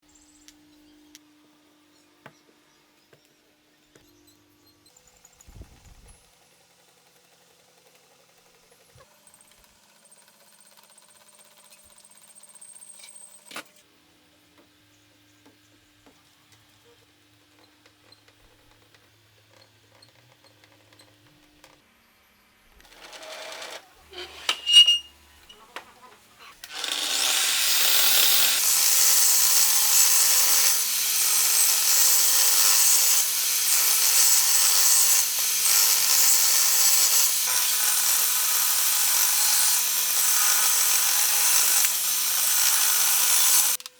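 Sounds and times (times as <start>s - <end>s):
electric power tool running: 26.6s - 43.9s.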